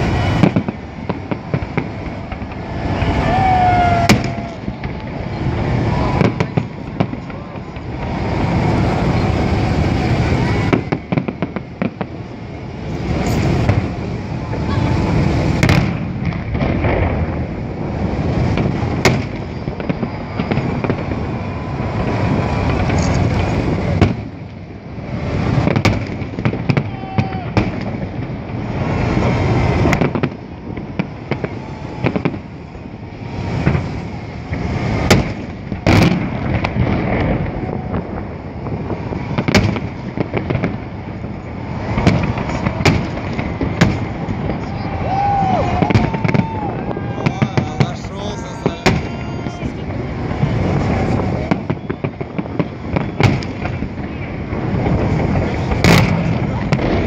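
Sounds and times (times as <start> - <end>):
fireworks rumble and crackle: 0.0 - 57.0
fireworks shells bursting: 4.0 - 14.2, 15.0 - 27.0, 27.6 - 44.7.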